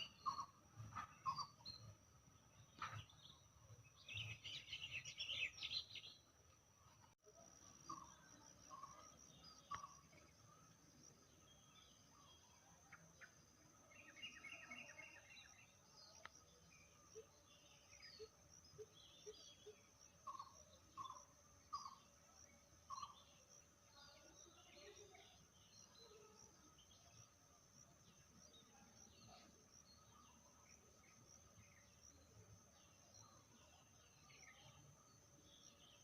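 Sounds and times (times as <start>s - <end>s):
small birds chirping: 0.0s - 6.4s.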